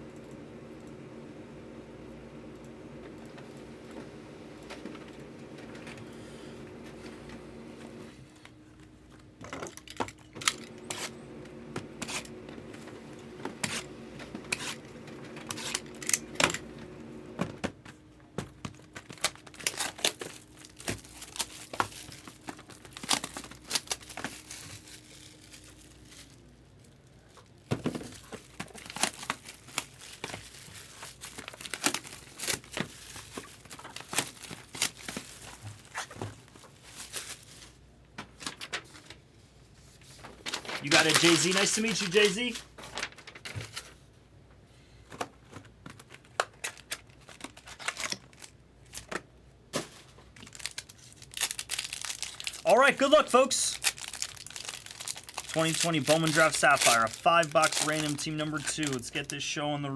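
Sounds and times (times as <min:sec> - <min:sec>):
plastic wrapping crackling: 0:18.8 - 0:37.8, 0:40.1 - 0:43.5, 0:46.0 - 0:49.2, 0:49.8 - 0:59.5.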